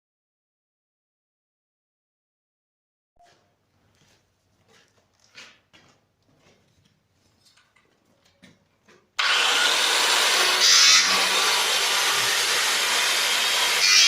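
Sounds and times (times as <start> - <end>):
power tool running: 9.2 - 14.0.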